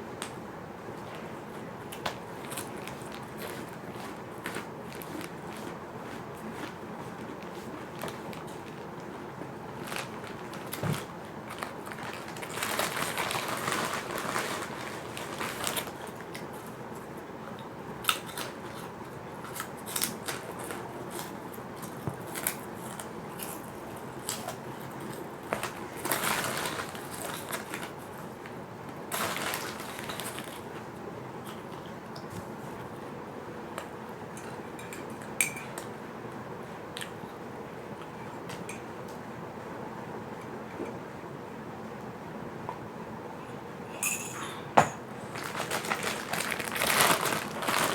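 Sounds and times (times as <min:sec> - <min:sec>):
crackers being chewed: 0:01.1 - 0:33.1, 0:45.3 - 0:47.9.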